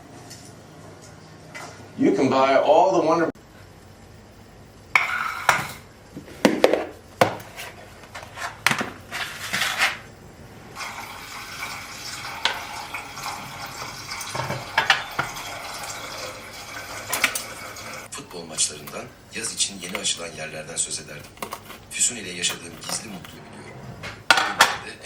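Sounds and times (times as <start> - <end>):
dishes and utensils clinking: 5.0 - 5.9, 12.2 - 18.0, 21.3 - 23.4, 24.0 - 25.0.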